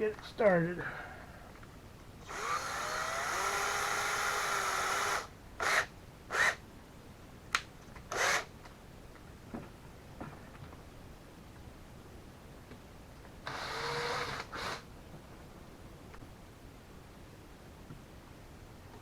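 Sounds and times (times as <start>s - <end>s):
power drill whining: 2.2s - 6.6s, 8.1s - 8.5s, 13.4s - 14.8s.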